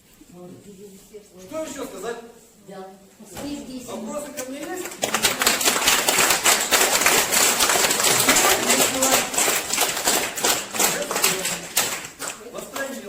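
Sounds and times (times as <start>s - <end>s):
audience applauding: 4.7s - 13.0s.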